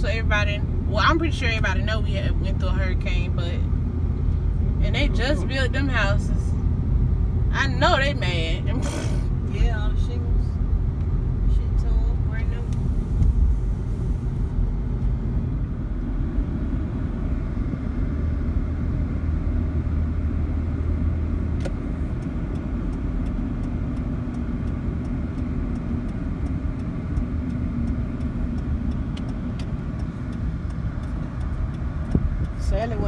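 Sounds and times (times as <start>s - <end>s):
car engine and road rumble: 0.0s - 33.0s
faint regular ticking: 21.9s - 33.0s.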